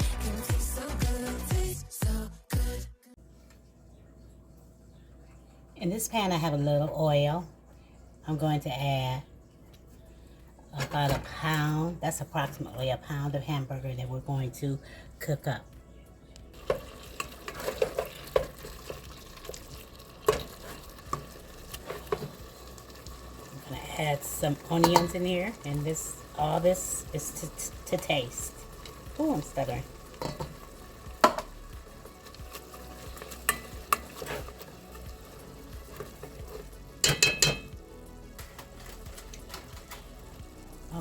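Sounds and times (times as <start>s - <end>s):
meat sizzling in a pan: 16.6s - 37.6s
utensil scraping and tapping pan: 30.2s - 30.6s, 31.2s - 31.6s, 33.2s - 34.7s, 35.9s - 37.8s
utensil knocking against pan: 31.2s - 31.5s, 37.0s - 37.7s.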